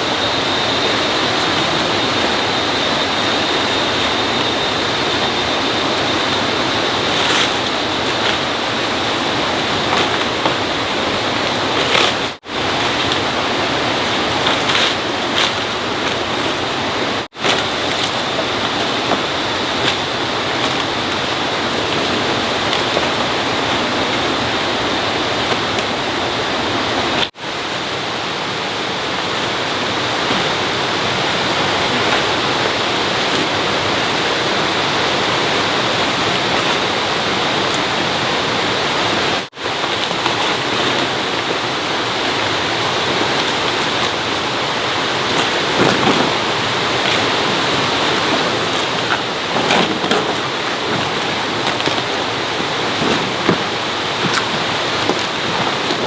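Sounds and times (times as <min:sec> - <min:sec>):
rushing water: 0:00.0 - 0:56.0.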